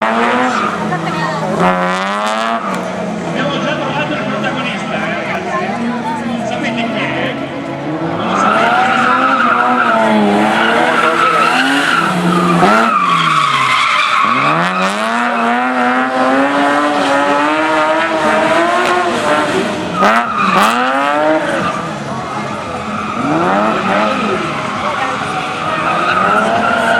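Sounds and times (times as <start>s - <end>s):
car engine revving hard: 0.0s - 26.9s
tyres squealing: 8.1s - 15.8s.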